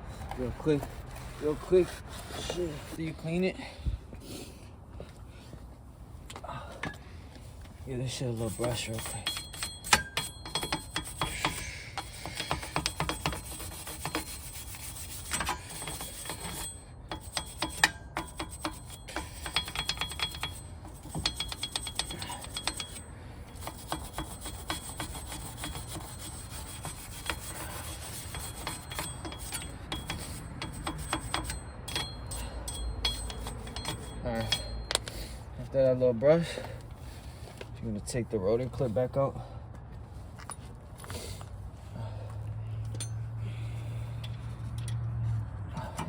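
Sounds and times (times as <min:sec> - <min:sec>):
brush scrubbing metal: 0:00.4 - 0:03.3, 0:07.9 - 0:34.8.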